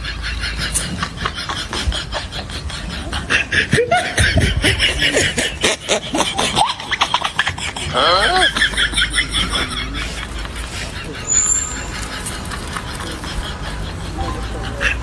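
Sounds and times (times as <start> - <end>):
person laughing: 0.7 - 11.2.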